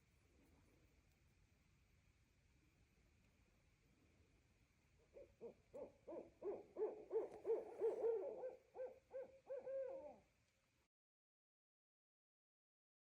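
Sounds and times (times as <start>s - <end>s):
owl hooting: 5.1s - 10.3s.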